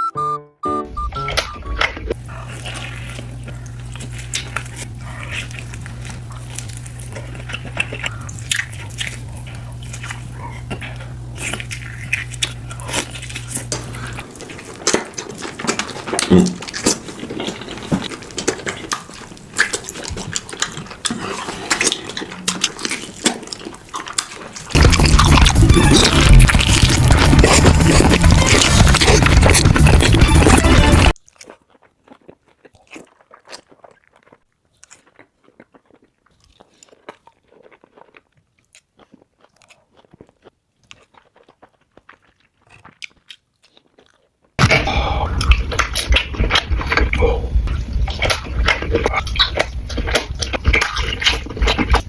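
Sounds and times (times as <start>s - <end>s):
wet chewing and mouth smacks: 1.6s - 44.6s, 45.3s - 52.0s
steady low hum: 1.8s - 18.9s, 24.7s - 31.2s, 44.6s - 52.0s.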